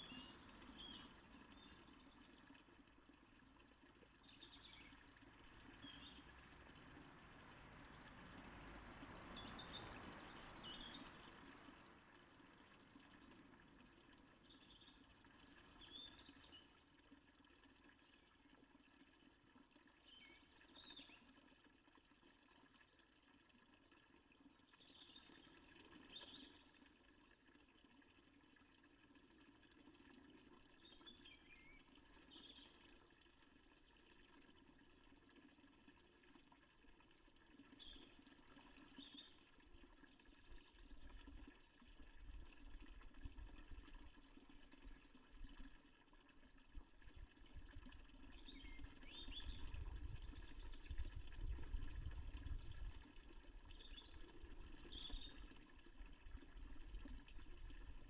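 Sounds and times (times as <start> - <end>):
fountain water running: 0.0 - 58.0.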